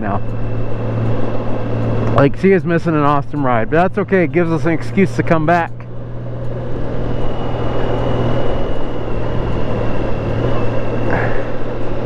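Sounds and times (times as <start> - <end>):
faint high whine: 0.0 - 12.0
motorcycle engine hum: 0.0 - 12.0
wind and road noise: 0.0 - 12.0.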